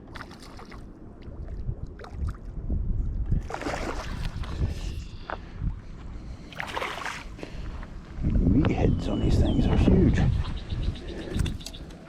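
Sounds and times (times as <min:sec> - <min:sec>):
water splashing and sloshing: 0:00.0 - 0:05.0, 0:06.4 - 0:07.9
wind rumbling on microphone: 0:00.0 - 0:12.0.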